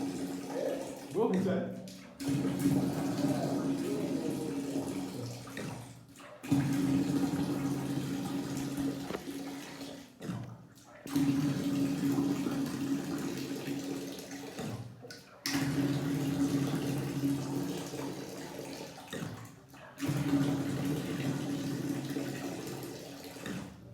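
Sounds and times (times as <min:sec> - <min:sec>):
water rushing: 0:00.0 - 0:10.4.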